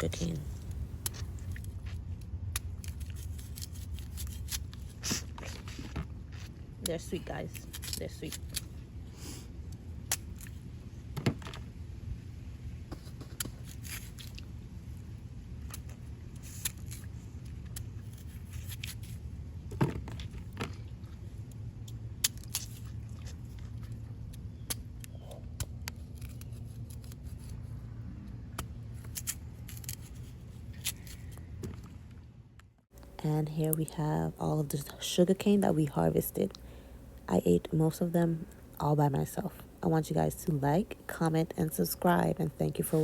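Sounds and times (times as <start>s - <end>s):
steady low hum: 0.0s - 43.0s
sugarcane cracking and snapping: 21.9s - 23.0s.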